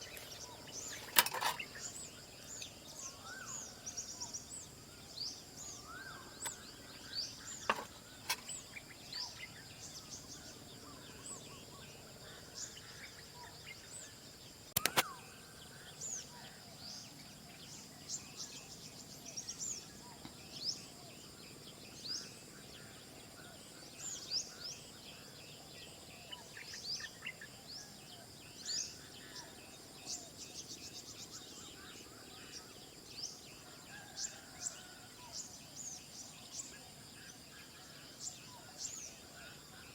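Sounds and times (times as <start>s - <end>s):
high insect drone: 0.0s - 39.9s
sharp clicks: 14.7s - 15.1s.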